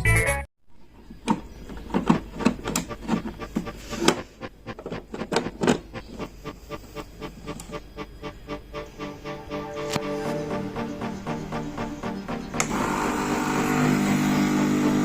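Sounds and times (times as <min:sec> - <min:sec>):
clicks and knocks of machine parts: 0:01.1 - 0:04.2.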